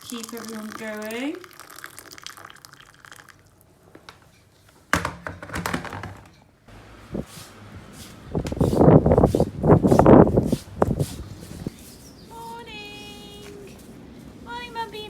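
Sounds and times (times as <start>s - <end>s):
water running from tap: 0.0s - 3.2s.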